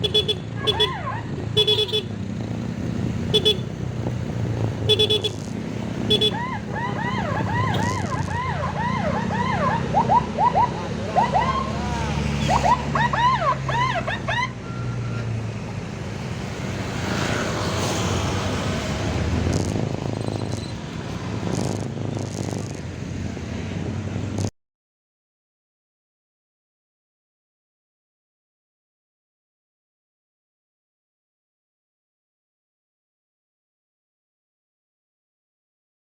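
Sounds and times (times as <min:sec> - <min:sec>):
engine hum: 0:00.0 - 0:24.5
road and wind noise: 0:00.0 - 0:24.6
electronic emergency siren: 0:06.1 - 0:15.3.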